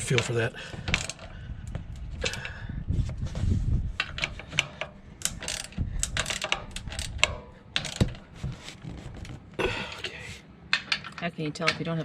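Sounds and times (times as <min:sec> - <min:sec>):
ratchet wrench clicking: 0:04.0 - 0:08.2.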